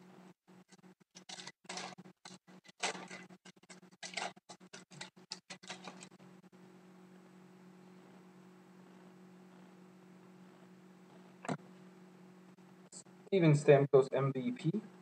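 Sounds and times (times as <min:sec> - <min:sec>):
trading cards rustling: 0:01.2 - 0:06.1.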